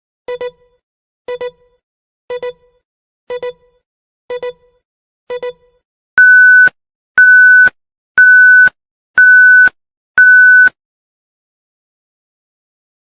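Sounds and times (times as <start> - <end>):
electronic beeps: 6.2 - 10.7.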